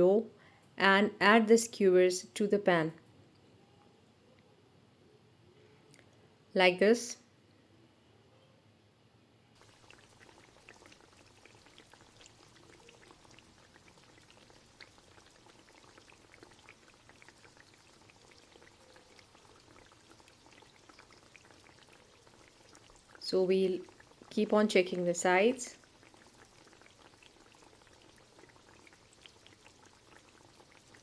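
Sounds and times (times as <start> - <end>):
oil crackling and popping: 9.6 - 31.0.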